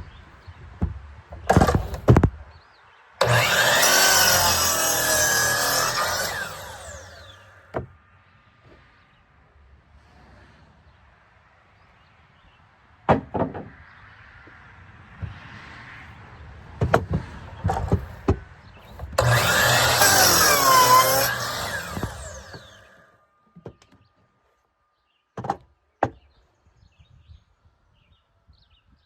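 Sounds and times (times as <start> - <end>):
power saw cutting wood: 1.5 - 2.2, 3.2 - 7.9, 16.8 - 23.1
wood knocking while handled: 13.1 - 13.7, 25.4 - 26.2.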